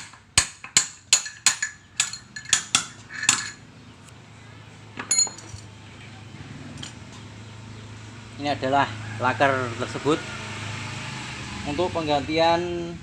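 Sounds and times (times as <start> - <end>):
metal-on-metal taps: 0.0 - 3.6.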